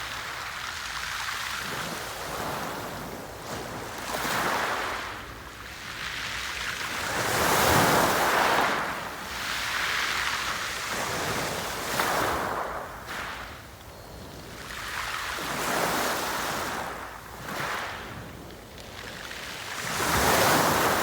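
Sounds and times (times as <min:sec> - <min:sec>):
sea waves breaking: 0:19.0 - 0:21.0.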